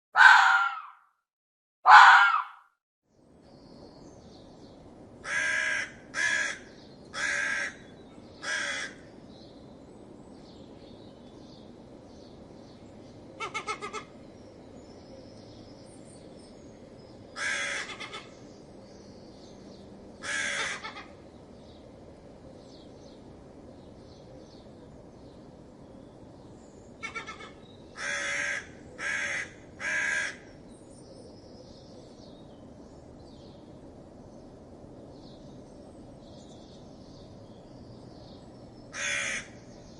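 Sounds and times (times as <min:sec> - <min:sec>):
fox barking: 0:00.2 - 0:01.0, 0:01.8 - 0:02.6.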